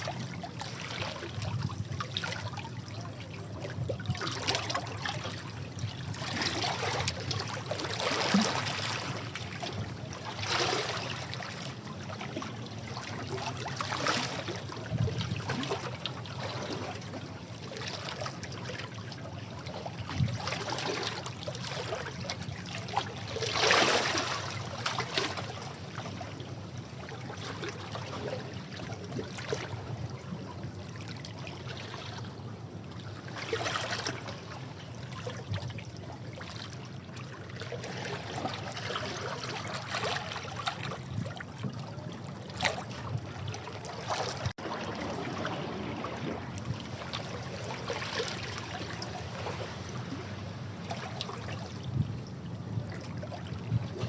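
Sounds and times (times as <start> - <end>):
sea waves washing against rocks: 43.2 - 50.8.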